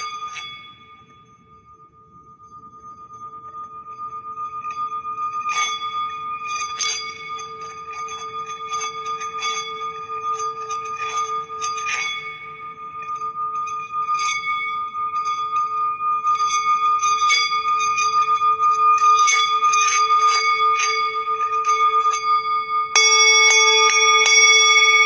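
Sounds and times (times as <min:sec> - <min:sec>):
singing bowls humming: 0:02.4 - 0:25.0
singing bowl strikes: 0:23.0 - 0:25.0.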